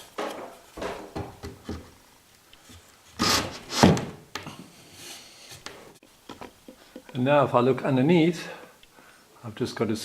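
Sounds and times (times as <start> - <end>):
wooden thuds: 0.1 - 2.0.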